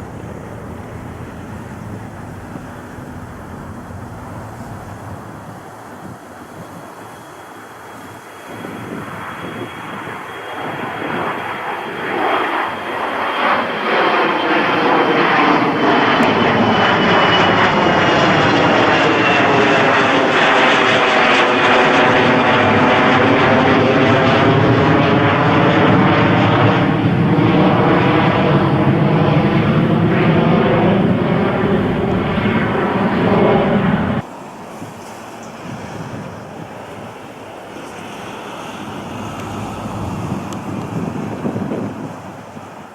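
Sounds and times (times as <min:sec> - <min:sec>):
airliner engine noise: 0:00.0 - 0:42.9.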